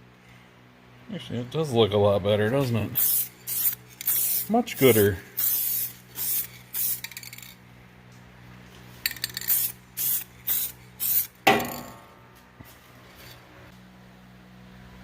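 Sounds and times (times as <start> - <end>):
spray paint hissing: 3.0 - 7.6, 9.0 - 11.4
metallic rattle: 11.5 - 12.1.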